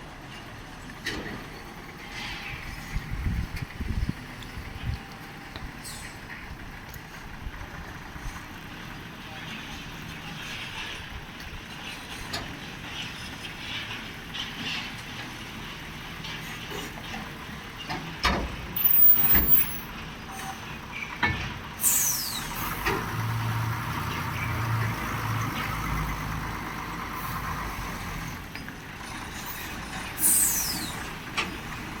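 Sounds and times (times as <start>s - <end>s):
truck engine running: 0.0s - 14.4s, 16.8s - 22.4s
air-brake hisses: 18.8s - 20.5s, 30.2s - 31.1s.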